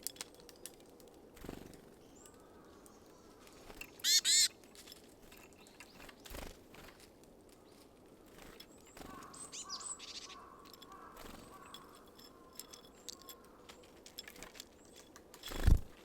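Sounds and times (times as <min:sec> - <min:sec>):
bird giving harsh calls: 0:03.9 - 0:04.5.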